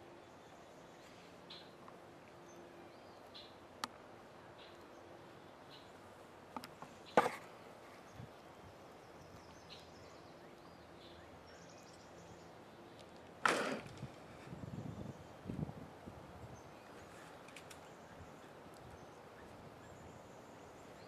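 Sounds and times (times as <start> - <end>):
sharp cracks: 13.2 - 14.2
faint clicks: 17.4 - 17.9.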